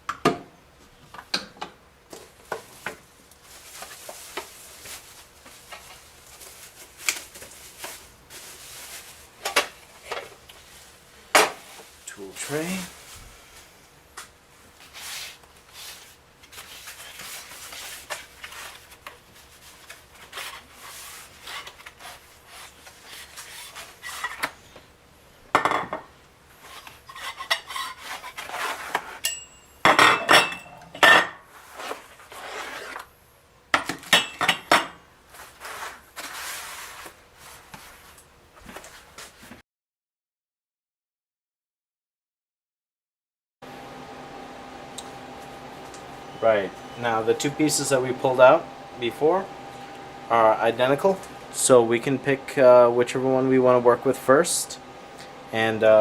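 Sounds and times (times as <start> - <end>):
packing material rustling: 2.2 - 11.0.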